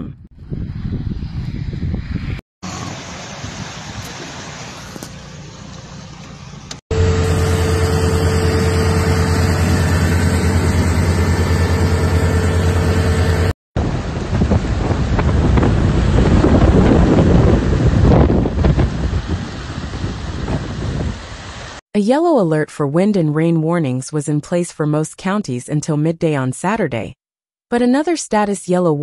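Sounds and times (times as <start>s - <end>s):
vehicle engine droning: 2.6s - 16.3s
steady rushing noise: 6.7s - 21.8s.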